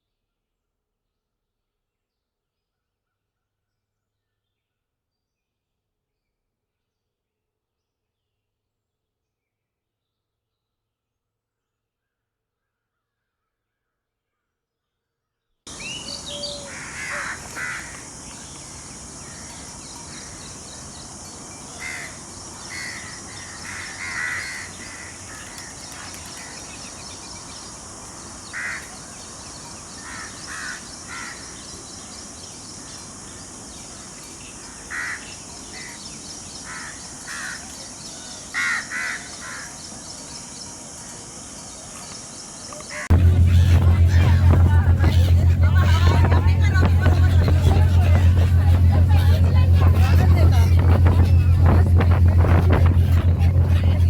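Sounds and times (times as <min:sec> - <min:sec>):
crows cawing: 0:15.7 - 0:26.6, 0:28.5 - 0:29.1, 0:30.0 - 0:31.5, 0:34.9 - 0:35.3, 0:38.6 - 0:39.8
steady high hiss: 0:15.7 - 0:37.1.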